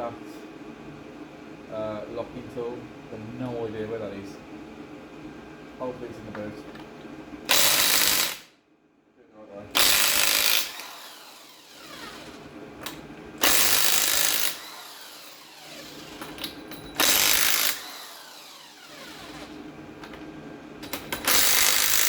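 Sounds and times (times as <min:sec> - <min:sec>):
impact wrench undoing nuts: 0:07.5 - 0:08.4, 0:09.8 - 0:20.2, 0:20.8 - 0:22.0
motor winding down whine: 0:09.8 - 0:12.5, 0:13.4 - 0:16.4, 0:17.0 - 0:19.6.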